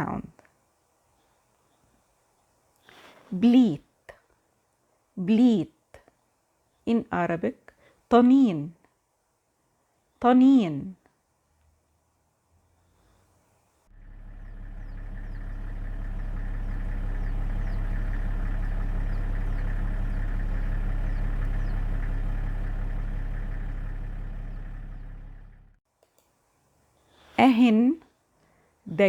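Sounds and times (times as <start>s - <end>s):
giraffe humming low drone: 13.9s - 25.8s.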